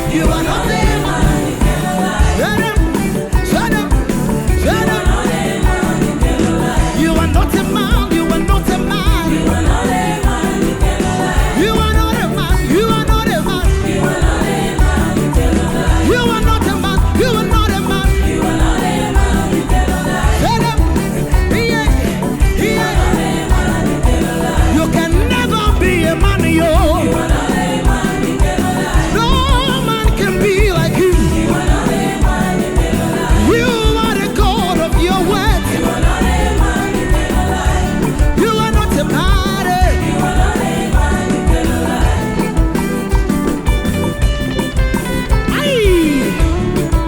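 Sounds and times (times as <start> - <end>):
upbeat gospel band music: 0.0 - 47.0.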